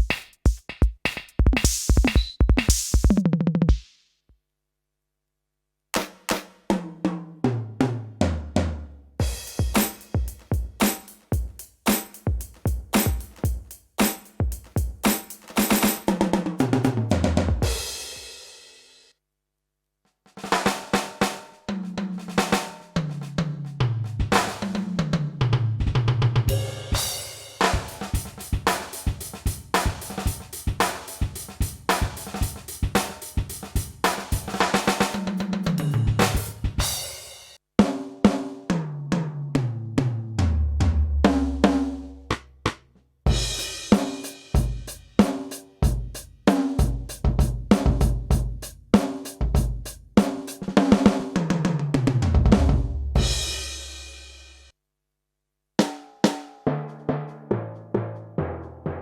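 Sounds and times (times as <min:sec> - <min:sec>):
electronic drum kit groove: 0:00.0 - 0:04.0, 0:09.2 - 0:18.3, 0:26.5 - 0:37.4, 0:43.3 - 0:51.4.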